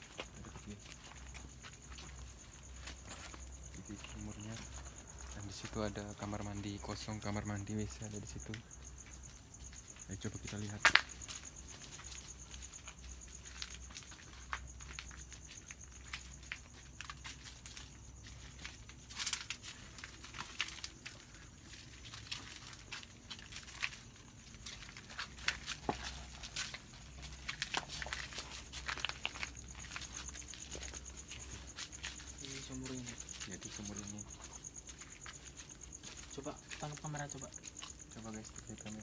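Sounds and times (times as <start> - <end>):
clicks and rustles of handled gear: 12.7 - 36.2.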